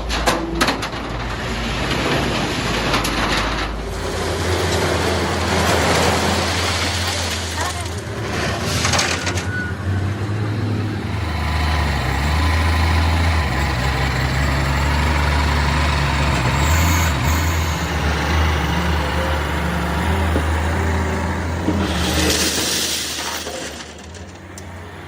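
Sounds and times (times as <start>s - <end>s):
street traffic noise: 0.0s - 25.0s
vehicle engine running: 10.8s - 22.1s.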